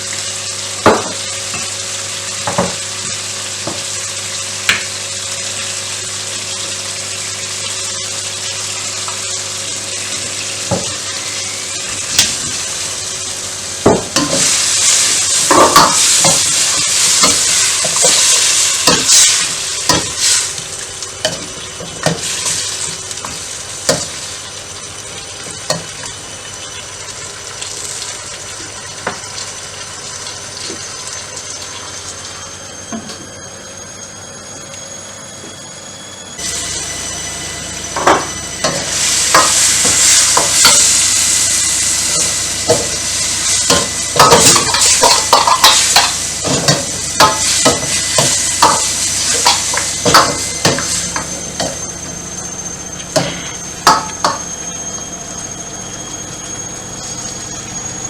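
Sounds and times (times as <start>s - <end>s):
food sizzling in a pan: 0.0s - 32.6s, 36.4s - 54.9s.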